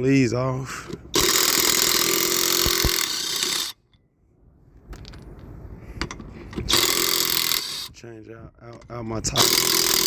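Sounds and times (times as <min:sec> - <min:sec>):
impact wrench running: 0:01.1 - 0:03.8, 0:06.7 - 0:07.9, 0:09.4 - 0:10.0.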